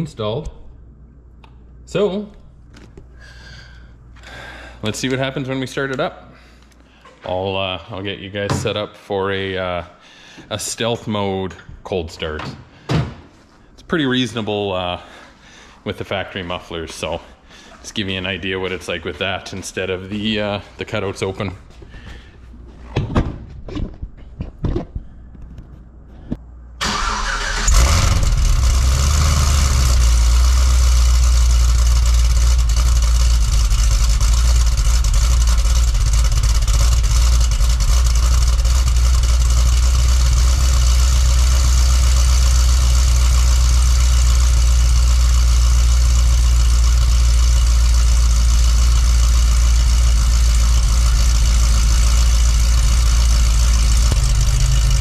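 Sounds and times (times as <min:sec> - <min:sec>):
engine cranking: 0:26.8 - 0:55.0
car engine idling with low rumble: 0:27.5 - 0:55.0.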